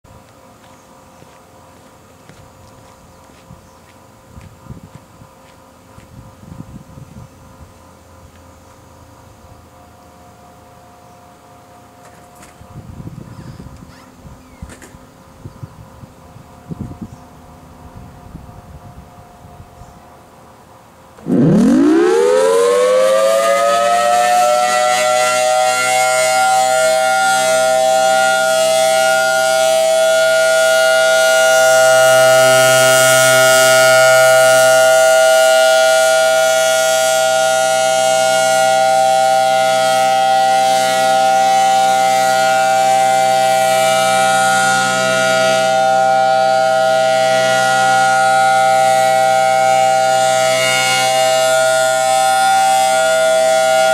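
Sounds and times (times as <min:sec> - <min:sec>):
siren winding up to steady tone: 0:21.2 - 0:53.9.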